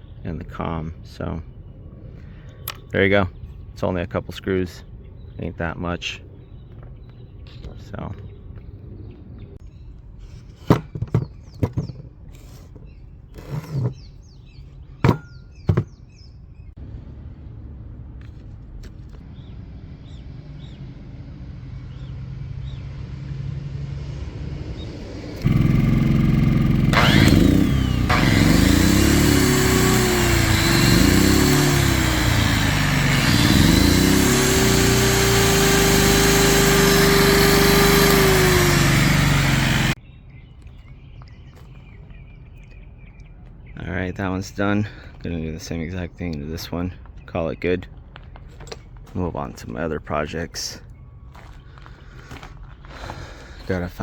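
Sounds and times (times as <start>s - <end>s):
angle grinder motor whirring: 25.3s - 40.0s.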